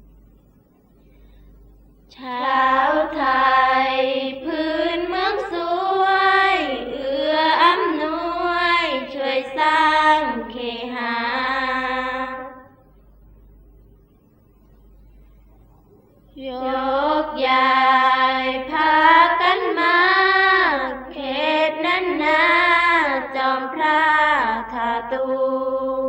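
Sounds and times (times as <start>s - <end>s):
person chanting unaccompanied: 2.1s - 12.6s, 16.4s - 26.0s.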